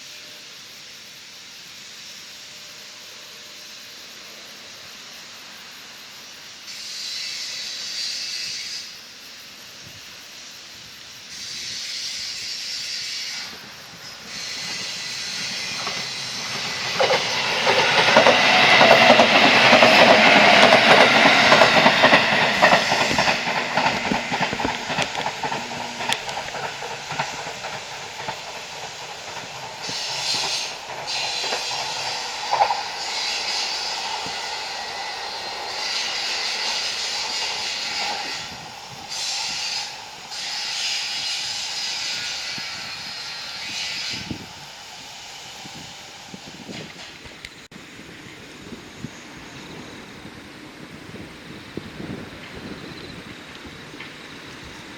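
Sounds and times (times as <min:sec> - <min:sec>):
electric train passing: 0:00.0 - 0:54.9
wheels clattering over rail joints: 0:13.5 - 0:41.6.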